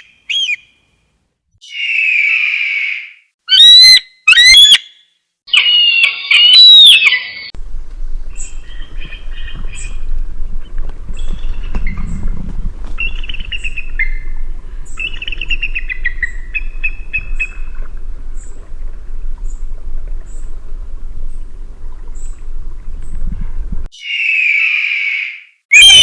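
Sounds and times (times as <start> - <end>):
eagle chittering call: 1.6 - 7.4, 24.0 - 26.0.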